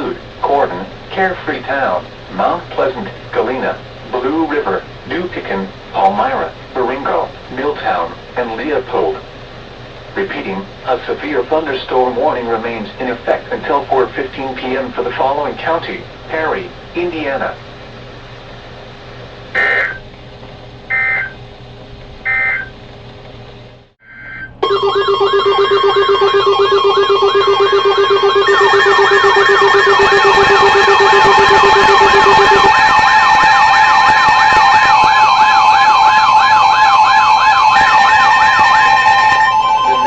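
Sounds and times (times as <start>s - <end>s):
electronic data bursts: 19.6s - 20.0s, 20.9s - 21.4s, 22.3s - 22.7s, 24.1s - 40.0s
warbling siren-like alert tones: 19.6s - 20.0s, 20.9s - 21.4s, 22.3s - 22.7s, 24.0s - 40.0s
steady alert tones: 24.0s - 40.0s.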